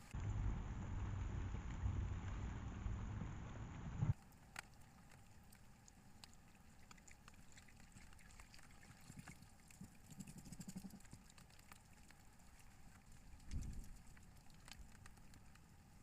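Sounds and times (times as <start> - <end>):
faint ticks: 4.1 - 16.0.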